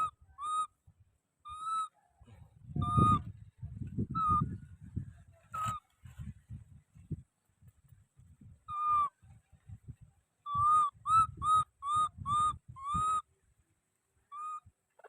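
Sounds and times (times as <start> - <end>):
baby monkey whistle-like cries: 0.0 - 0.7, 1.4 - 1.9, 2.8 - 3.3, 4.2 - 4.4, 8.7 - 9.1, 10.4 - 13.2, 14.3 - 14.6.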